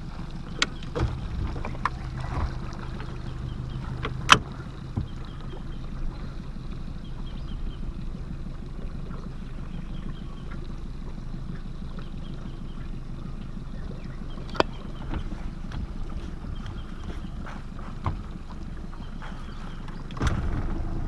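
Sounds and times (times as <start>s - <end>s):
wind buffeting microphone: 0.6s - 10.5s, 12.4s - 21.0s.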